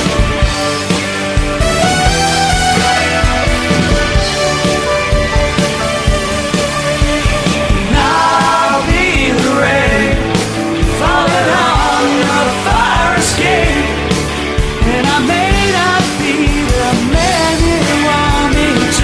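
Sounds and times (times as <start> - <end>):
drums steady beat: 0.0 - 19.0
rock band playing: 0.0 - 19.0
lead melody bending in pitch: 1.6 - 8.0.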